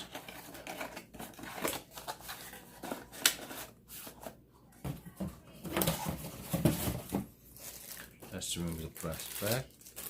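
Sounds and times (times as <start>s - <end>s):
packaging rustling: 5.8s - 10.0s.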